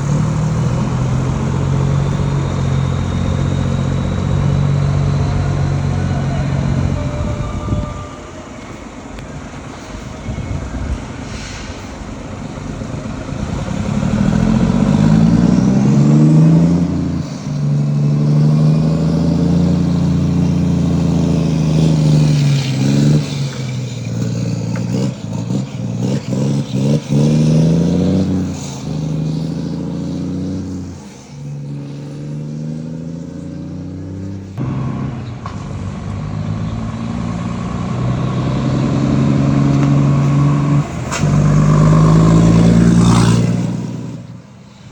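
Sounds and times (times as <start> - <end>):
truck diesel engine revving: 0.0 - 44.9.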